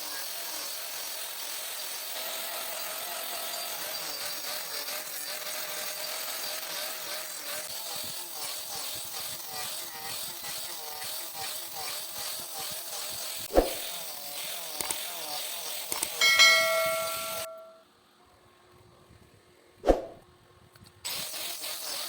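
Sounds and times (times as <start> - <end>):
hand tool scraping wood: 0.0 - 17.5
metal tool ringing: 16.2 - 17.9.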